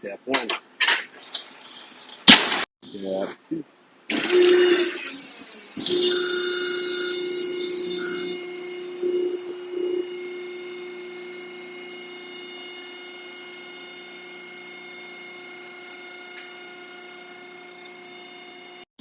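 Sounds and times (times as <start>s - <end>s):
machine humming: 4.1s - 18.8s.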